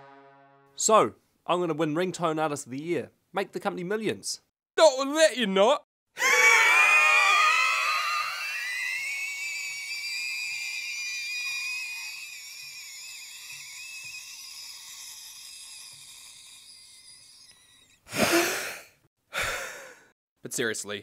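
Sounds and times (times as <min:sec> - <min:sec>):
sharp breath: 0:18.0 - 0:20.1.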